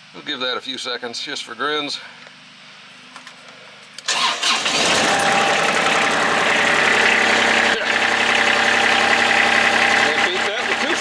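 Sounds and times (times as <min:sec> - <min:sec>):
diesel engine running: 0:04.1 - 0:11.0
fuel pump humming: 0:04.1 - 0:11.0
starter cranking: 0:04.1 - 0:11.0.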